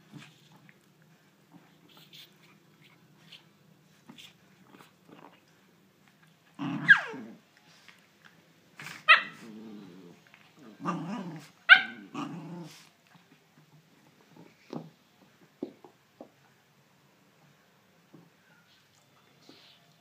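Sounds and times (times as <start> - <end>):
dog growling in play: 6.5 - 7.4, 8.8 - 12.9
dog barking high-pitched: 11.7 - 12.0.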